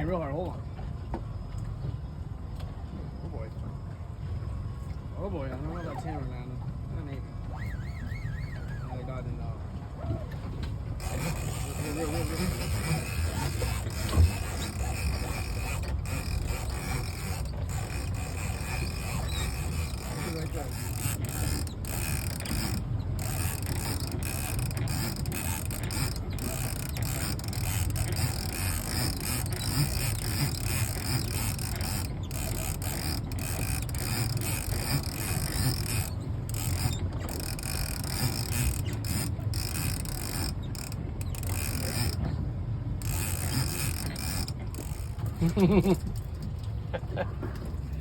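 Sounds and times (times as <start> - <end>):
fishing reel winding: 11.0 - 42.2, 43.0 - 46.0.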